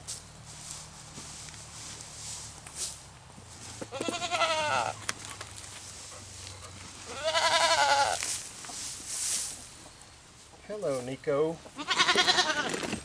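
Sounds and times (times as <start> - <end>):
goat bleating: 3.9 - 5.0, 7.0 - 8.2, 11.7 - 12.9.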